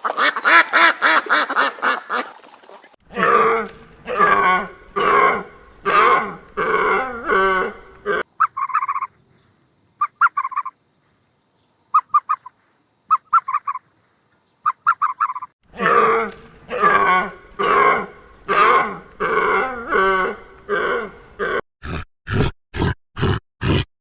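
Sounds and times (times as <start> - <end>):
drawn-out animal calls: 3.1 - 9.1, 14.6 - 21.6
rapid chattering calls: 3.6 - 9.2, 10.0 - 10.8, 12.0 - 13.9, 14.6 - 15.5, 16.4 - 20.9.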